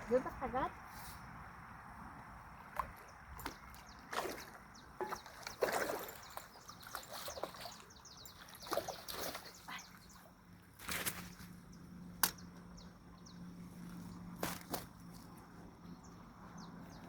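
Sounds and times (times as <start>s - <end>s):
water splashing: 2.7s - 11.6s.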